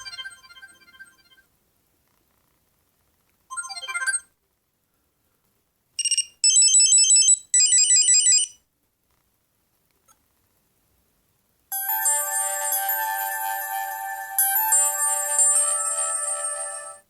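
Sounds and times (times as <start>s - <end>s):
phone ringtone electronic notes: 11.7s - 17.0s.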